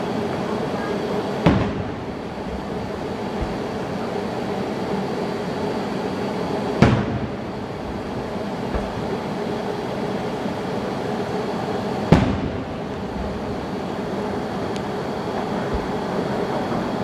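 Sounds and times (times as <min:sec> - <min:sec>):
background rumble: 0:01.2 - 0:05.8, 0:06.7 - 0:17.0
faint firework thumps: 0:01.4 - 0:04.0, 0:08.7 - 0:09.2, 0:14.7 - 0:16.1
firework bang: 0:01.4 - 0:04.3, 0:06.8 - 0:09.2, 0:12.1 - 0:16.3.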